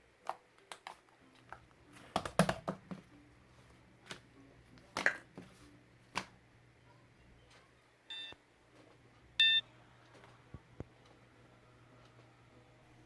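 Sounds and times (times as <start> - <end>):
short electronic beeps: 8.1 - 8.4, 9.4 - 9.6.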